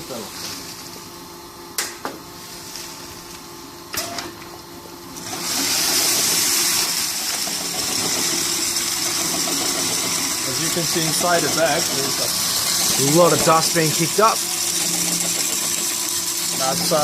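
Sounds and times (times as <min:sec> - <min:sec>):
machinery hum: 0:00.0 - 0:17.0
powder pouring hiss: 0:05.3 - 0:17.0.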